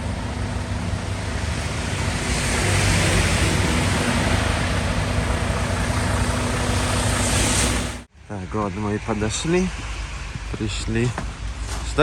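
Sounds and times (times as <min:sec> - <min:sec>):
vehicle engine hum: 0:00.0 - 0:08.1.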